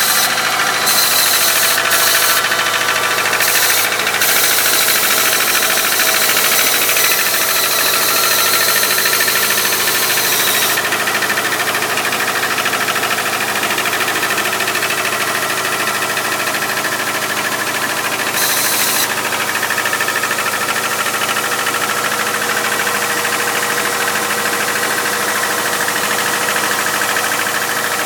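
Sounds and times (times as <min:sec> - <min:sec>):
car engine running: 0:00.0 - 0:28.0
rattling engine knock: 0:00.0 - 0:28.0.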